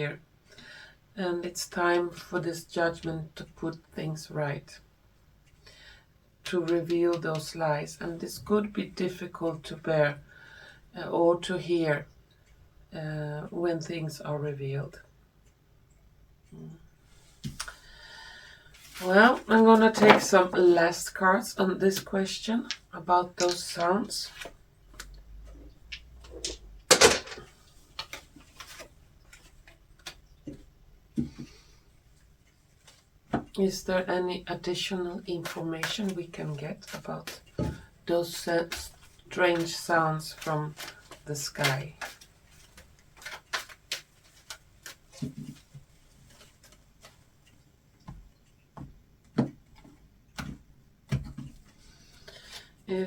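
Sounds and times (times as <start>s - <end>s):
deck tapping table: 19.9s - 20.7s
cards tapping and clicking: 39.6s - 47.2s.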